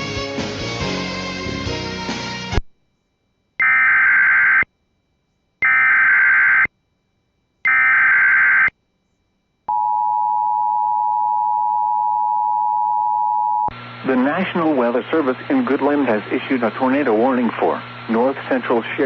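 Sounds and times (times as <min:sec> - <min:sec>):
screeching digital alert bursts: 0:03.6 - 0:04.7, 0:05.6 - 0:06.7, 0:07.7 - 0:08.7.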